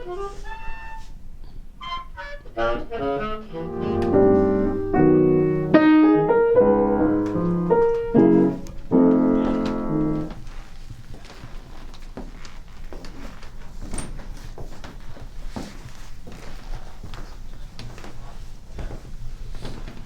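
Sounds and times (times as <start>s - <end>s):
piano playing jazz chords: 1.8s - 10.4s.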